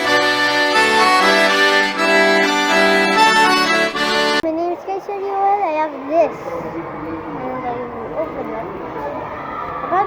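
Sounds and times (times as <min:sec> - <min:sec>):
reedy chords and melody: 0:00.0 - 0:04.4.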